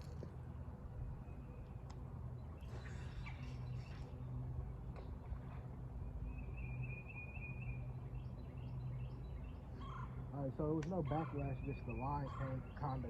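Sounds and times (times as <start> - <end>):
steady low hum: 0.0 - 13.0
bird trilled call: 11.0 - 13.0.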